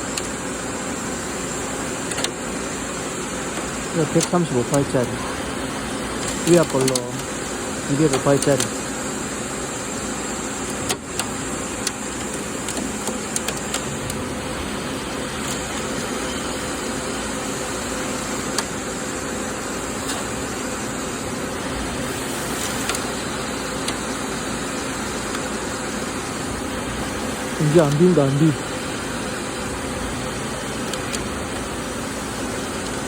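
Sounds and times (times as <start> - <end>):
coolant spraying hiss: 0.0 - 33.0
lathe machine hum: 0.0 - 33.0.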